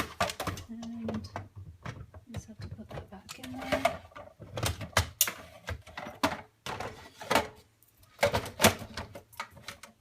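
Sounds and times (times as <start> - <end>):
plastic part knocking and clicking: 0.0 - 7.5.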